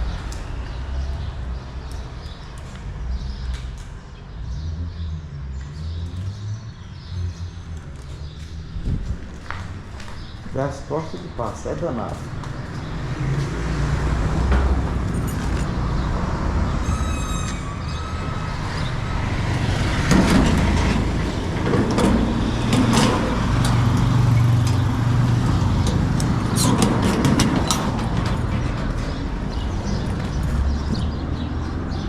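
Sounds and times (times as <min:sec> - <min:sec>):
vehicle engine humming: 0:00.0 - 0:32.0
knocks and clicks: 0:19.6 - 0:29.2.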